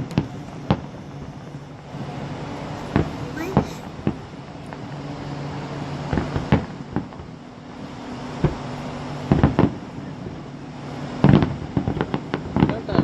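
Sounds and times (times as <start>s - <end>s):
fireworks bangs and pops: 0.0s - 1.9s, 2.8s - 5.1s, 6.1s - 7.4s, 8.4s - 13.0s
steady low hum: 0.0s - 13.0s.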